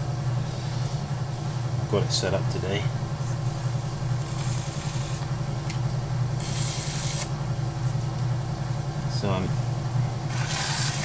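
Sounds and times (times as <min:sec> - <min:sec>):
potter's wheel motor humming: 0:03.3 - 0:08.3, 0:09.7 - 0:11.0
tool scraping wet clay: 0:10.3 - 0:11.0.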